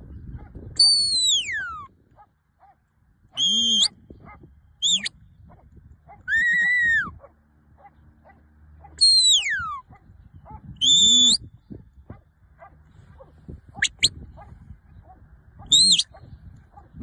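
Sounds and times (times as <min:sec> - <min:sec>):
dog whining: 0:06.3 - 0:07.1, 0:15.7 - 0:16.0.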